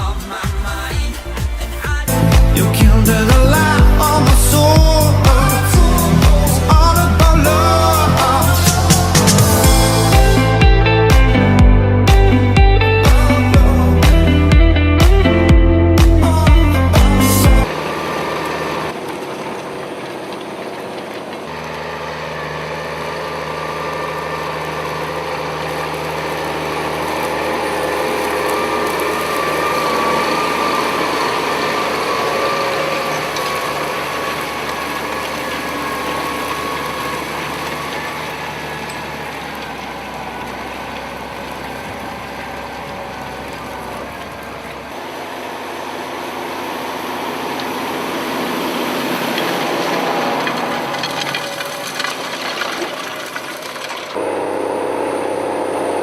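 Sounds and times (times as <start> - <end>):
farm machinery engine hum: 0.0 - 56.0
clatter of working mechanisms: 17.7 - 45.0, 47.5 - 54.2.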